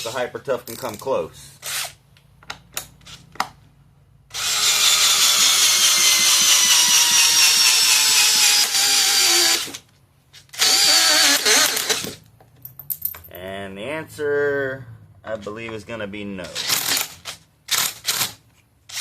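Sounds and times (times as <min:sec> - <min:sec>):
drill motor slowing under load: 0:04.3 - 0:09.8, 0:10.6 - 0:12.1
drill clicks: 0:04.4 - 0:09.8, 0:10.5 - 0:12.2.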